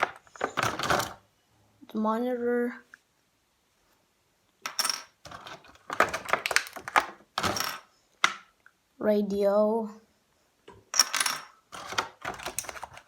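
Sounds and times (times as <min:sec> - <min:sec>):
plastic toys clicking and clattering: 0:00.0 - 0:01.2, 0:04.6 - 0:08.5, 0:10.9 - 0:13.0.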